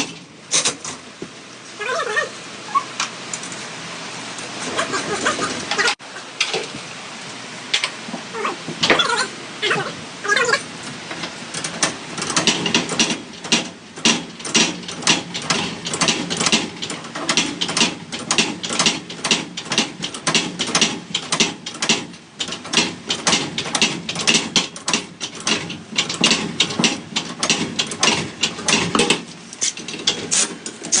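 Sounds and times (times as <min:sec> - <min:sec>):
garage door spring clicking: 0:11.5 - 0:31.0.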